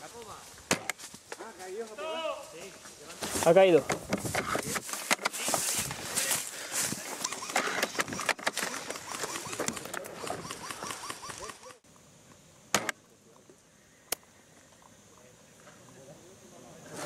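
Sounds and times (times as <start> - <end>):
rustling and handling noise: 0.0 - 11.8
sharp clicks: 7.2 - 11.8.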